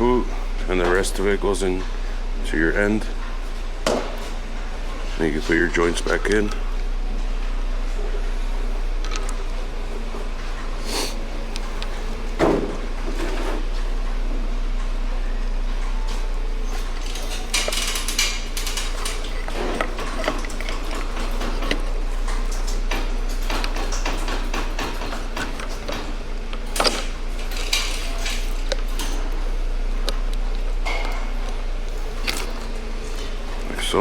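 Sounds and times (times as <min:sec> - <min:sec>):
steel parts clinking and clicking: 0:16.6 - 0:34.0.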